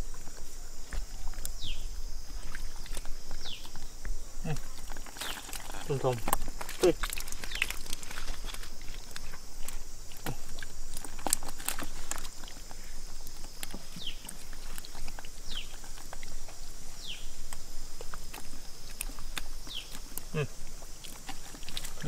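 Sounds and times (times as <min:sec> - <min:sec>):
high insect drone: 0:00.0 - 0:22.0
mud splats worked by hand: 0:04.4 - 0:12.6.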